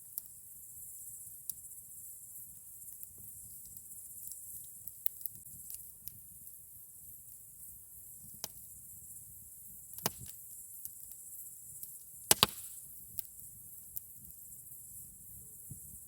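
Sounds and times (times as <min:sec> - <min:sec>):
campfire crackling and popping: 0:02.9 - 0:08.8, 0:09.9 - 0:14.4.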